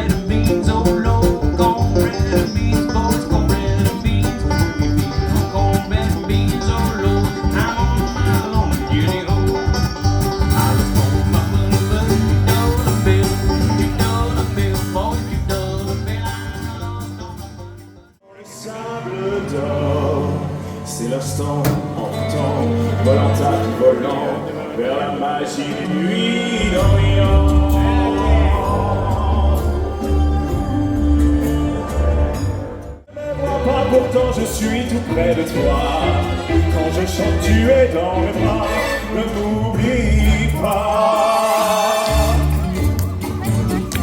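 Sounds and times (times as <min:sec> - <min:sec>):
music with heavy low line: 0:00.0 - 0:17.9
bluegrass music with banjo and guitar: 0:00.0 - 0:18.2, 0:20.5 - 0:44.0.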